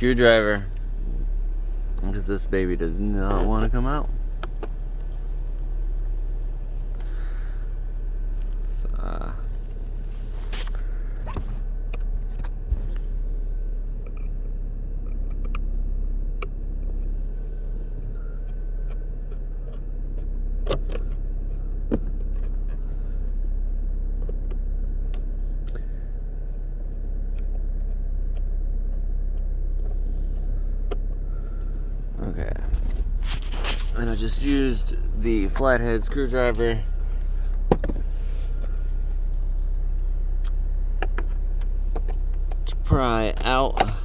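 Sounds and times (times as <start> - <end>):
steady low rumble: 0.0 - 44.0
small scrapes: 9.7 - 11.7, 31.8 - 35.6.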